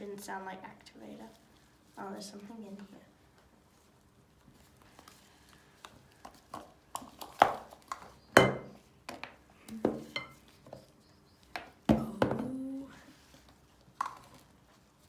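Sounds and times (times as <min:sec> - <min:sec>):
utensils clinking against bowls: 0:08.4 - 0:08.8, 0:09.9 - 0:10.4.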